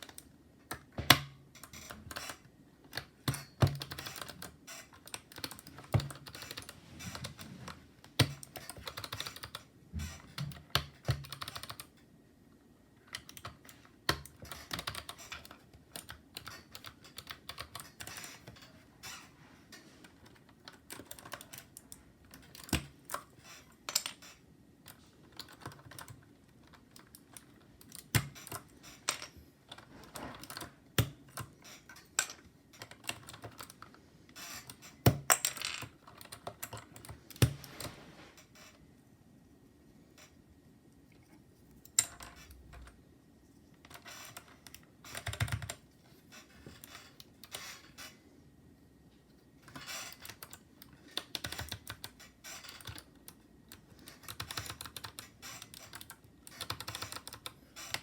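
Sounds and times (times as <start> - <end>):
mechanical keyboard typing: 0.0 - 11.9, 13.1 - 18.7, 20.2 - 23.4, 24.0 - 28.7, 29.7 - 31.6, 32.8 - 33.8, 34.6 - 37.8, 43.9 - 45.8, 49.7 - 58.0.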